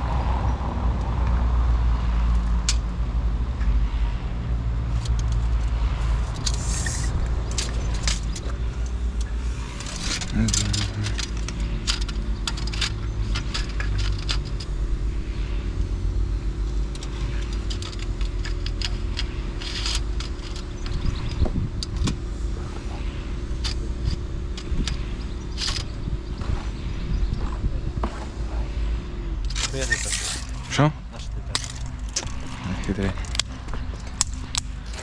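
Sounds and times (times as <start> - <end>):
engine low rumble: 0.0 - 35.0
light rattles and clicks: 4.9 - 28.2, 29.4 - 35.0.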